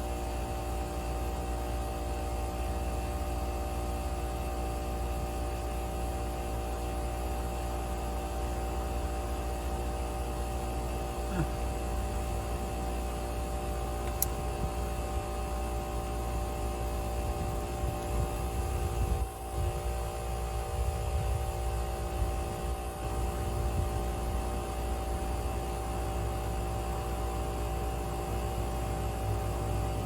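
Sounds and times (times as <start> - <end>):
air compressor humming: 0.0 - 30.0.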